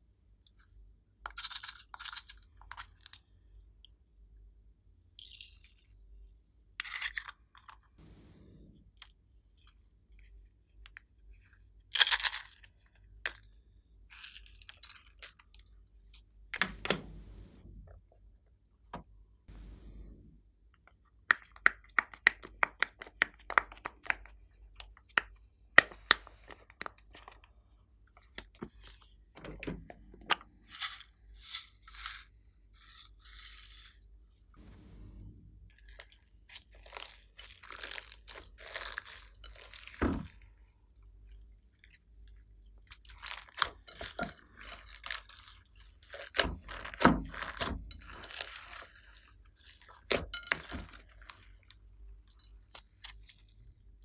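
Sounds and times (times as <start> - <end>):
slime squishing and crackling: 35.8 - 40.4, 42.8 - 51.6.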